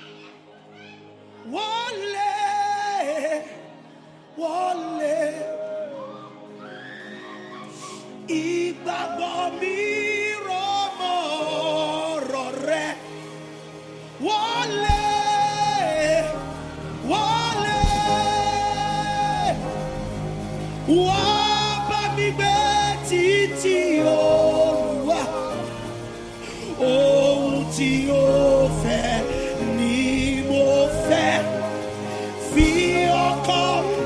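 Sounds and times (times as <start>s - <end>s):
person singing worship song: 0.0s - 34.0s
soft sustained instrumental chords: 10.2s - 34.0s.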